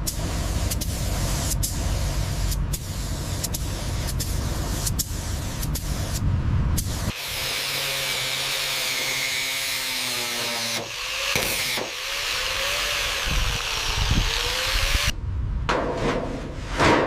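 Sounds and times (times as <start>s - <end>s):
power tool motor whine: 7.1s - 15.1s.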